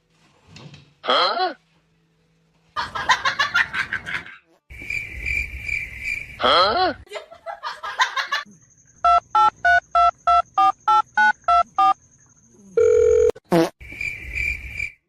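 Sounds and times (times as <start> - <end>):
phone keypad beeps: 9.1 - 12.0
steady phone tone: 12.8 - 13.4.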